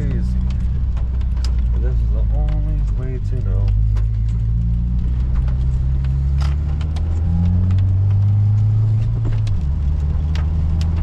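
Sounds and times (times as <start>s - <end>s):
car engine from inside cabin: 0.0s - 11.0s.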